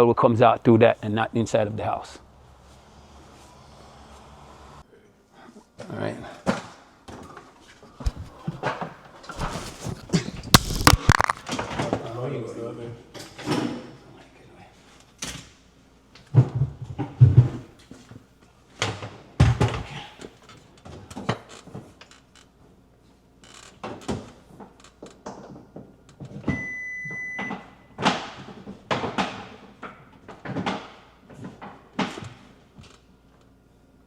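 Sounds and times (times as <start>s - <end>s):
hard parts knocking and clattering: 9.4s - 11.5s.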